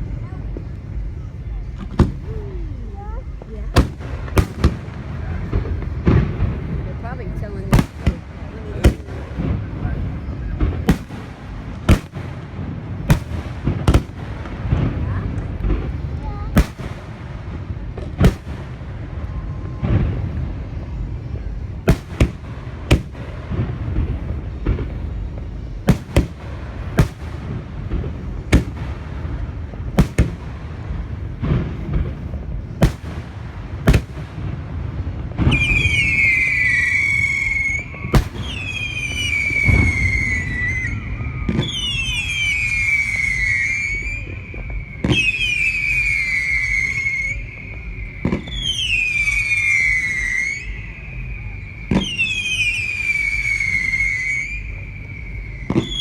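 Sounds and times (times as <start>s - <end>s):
fireworks bursting with bangs: 0.0s - 56.0s
high whistling tone: 35.5s - 56.0s.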